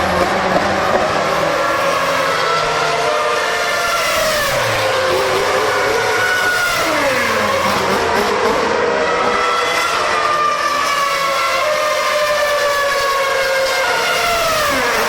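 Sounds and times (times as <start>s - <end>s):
racing car engines at high revs: 0.0s - 15.0s.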